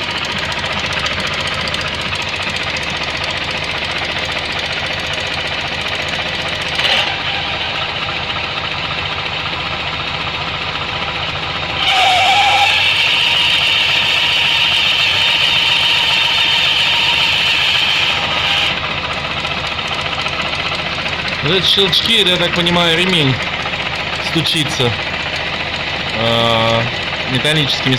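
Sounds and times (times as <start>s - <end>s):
scooter engine running: 0.0s - 27.9s.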